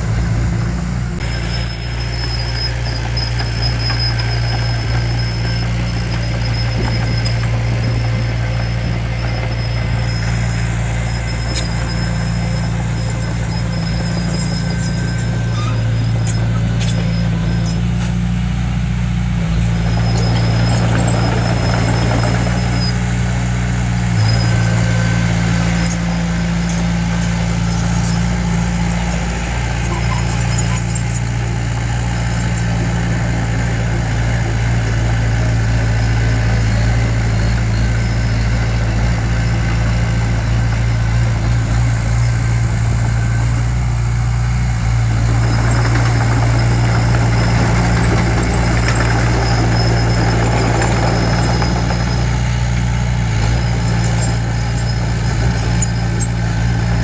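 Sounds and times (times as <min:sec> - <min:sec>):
heavy diesel engine running: 0:00.0 - 0:57.0
faint high squeaks: 0:01.2 - 0:18.7, 0:19.4 - 0:33.4, 0:45.2 - 0:57.0.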